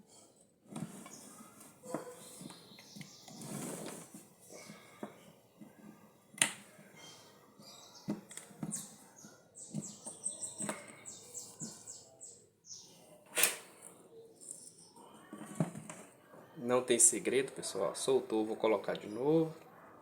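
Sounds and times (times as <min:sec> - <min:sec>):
brushing or scraping strokes: 0:03.2 - 0:04.7.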